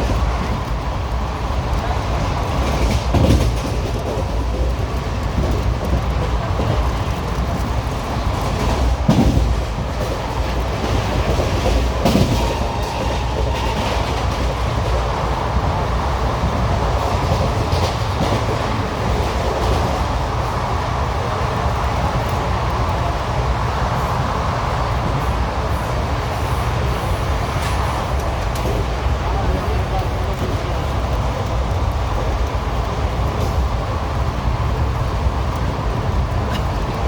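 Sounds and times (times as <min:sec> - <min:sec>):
wheels clattering over rail joints: 0:00.0 - 0:23.1
train coach rumbling: 0:00.0 - 0:37.0.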